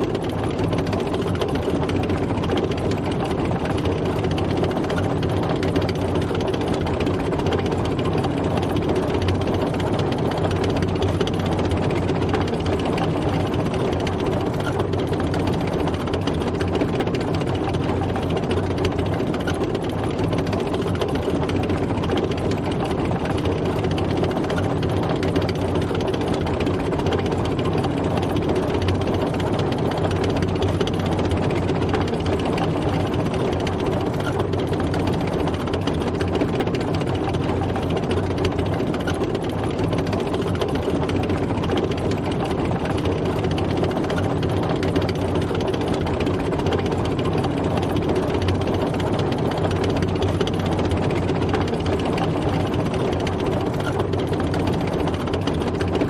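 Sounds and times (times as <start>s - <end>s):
fast mechanical clatter: 0.0s - 56.0s
tank engine running: 0.0s - 56.0s.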